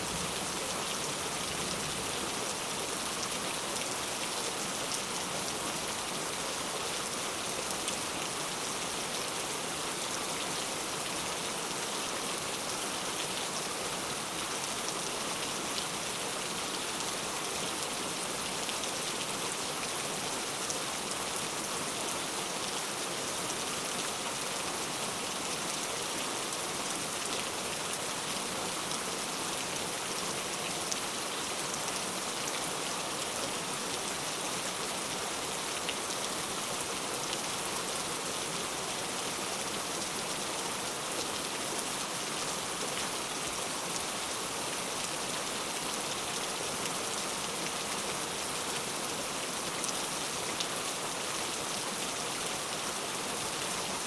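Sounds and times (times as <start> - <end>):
steady rain: 0.0 - 54.0.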